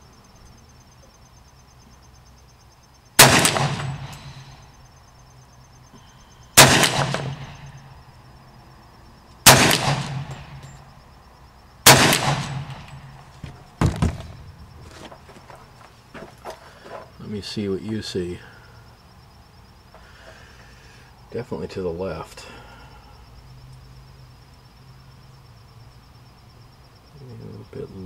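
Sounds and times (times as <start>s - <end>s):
faint sharp cracks: 3.2s - 4.6s, 6.6s - 7.9s, 9.3s - 10.9s, 11.9s - 15.6s
rifle shots echoing: 3.2s - 4.6s, 6.6s - 7.9s, 9.4s - 10.8s, 11.8s - 14.4s.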